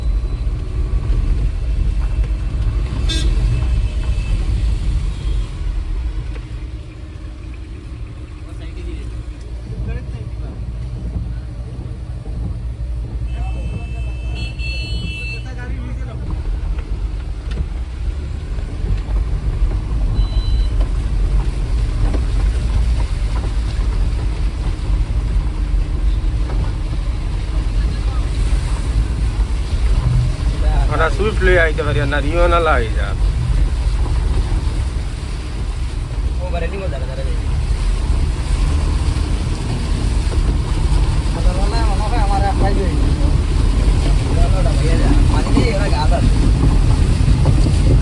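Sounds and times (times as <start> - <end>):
vehicle rumble: 0.0 - 48.0
short horn toot: 3.0 - 5.6
short high beep: 20.1 - 20.8.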